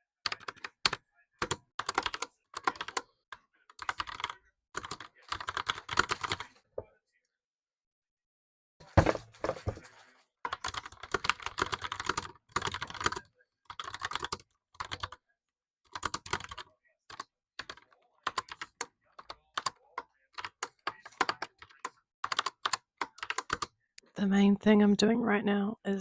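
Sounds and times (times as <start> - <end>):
mechanical keyboard typing: 0.3 - 3.0, 3.7 - 6.5, 10.5 - 15.2, 15.9 - 23.7.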